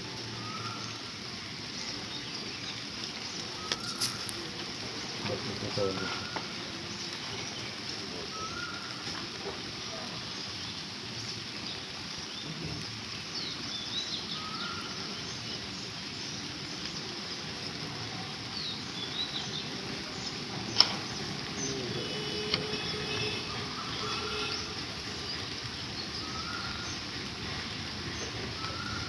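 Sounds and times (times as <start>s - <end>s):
rain hissing: 0.0s - 29.0s.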